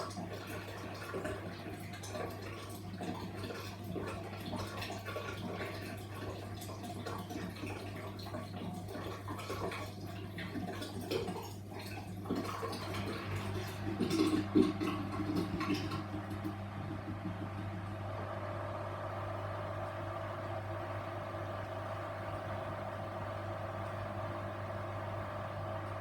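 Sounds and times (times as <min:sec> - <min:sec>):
water swishing in washing machine: 0:00.0 - 0:26.0
motor hum: 0:12.1 - 0:26.0.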